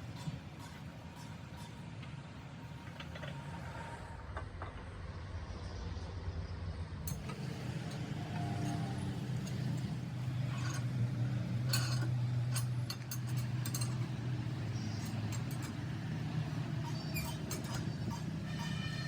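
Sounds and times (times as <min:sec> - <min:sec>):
low machine hum: 0:02.4 - 0:19.0
metallic clinks and taps: 0:07.1 - 0:11.0, 0:11.7 - 0:19.0.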